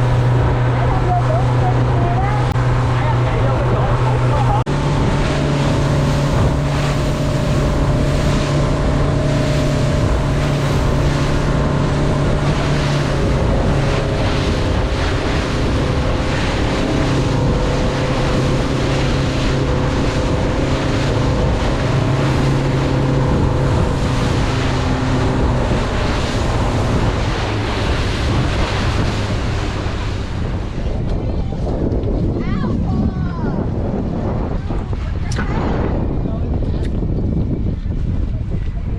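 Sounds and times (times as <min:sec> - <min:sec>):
motorboat engine running: 0:00.0 - 0:38.9
water and waves rushing: 0:00.0 - 0:38.9
wind buffeting microphone: 0:00.0 - 0:38.9.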